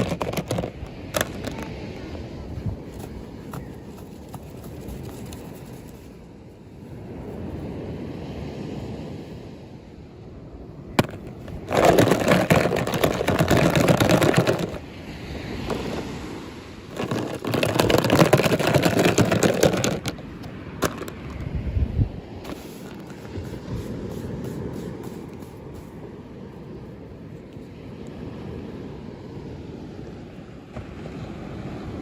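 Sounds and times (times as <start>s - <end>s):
soft handling noise: 0.0s - 2.0s, 2.8s - 6.6s, 11.0s - 14.8s, 16.9s - 21.5s, 22.4s - 26.7s
packaging crackling rustle: 11.0s - 14.8s, 16.9s - 20.2s.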